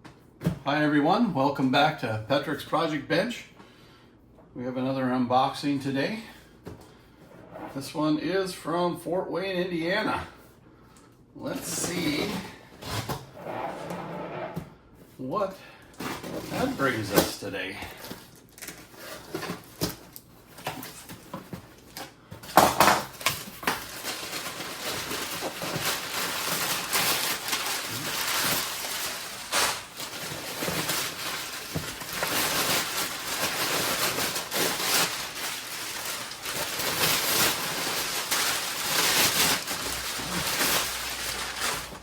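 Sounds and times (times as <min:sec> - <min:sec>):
packing paper rustling: 0:15.9 - 0:42.0.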